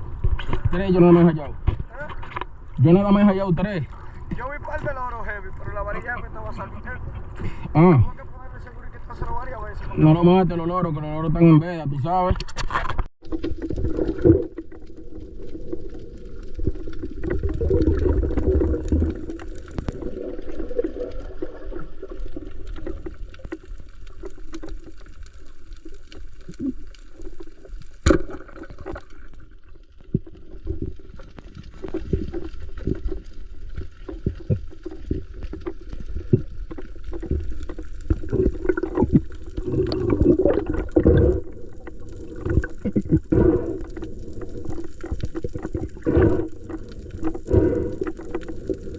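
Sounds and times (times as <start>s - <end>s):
water sloshing and gurgling: 12.4s - 48.9s.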